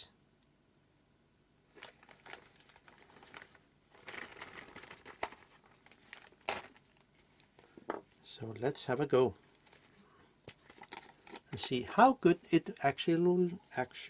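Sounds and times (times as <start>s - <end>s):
paper wipe crinkling: 1.7s - 8.2s, 9.4s - 14.0s.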